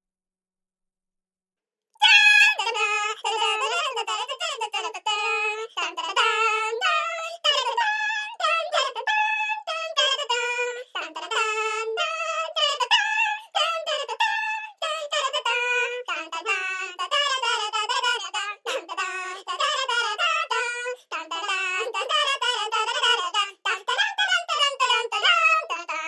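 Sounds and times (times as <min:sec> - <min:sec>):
high-pitched singing voice: 0:02.0 - 0:26.0.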